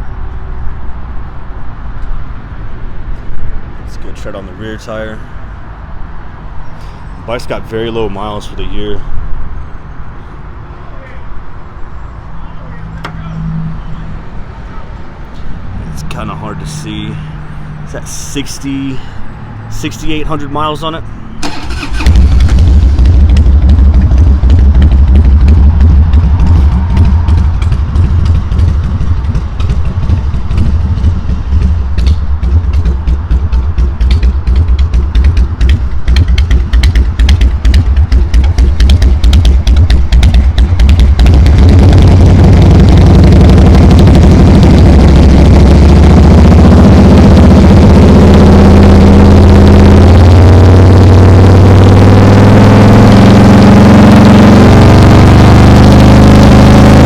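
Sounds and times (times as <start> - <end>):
motorcycle engine revving: 21.4 - 57.0.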